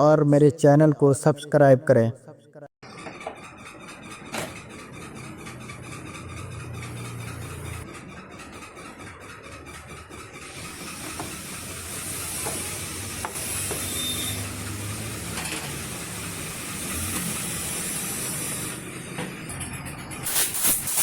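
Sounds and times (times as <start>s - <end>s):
compressed air hissing: 10.8s - 18.8s, 20.3s - 21.0s.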